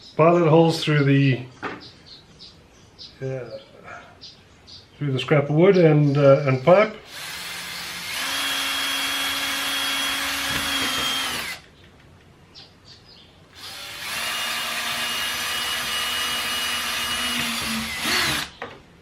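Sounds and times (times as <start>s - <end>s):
power drill boring through wood: 7.0s - 11.6s, 13.6s - 18.6s.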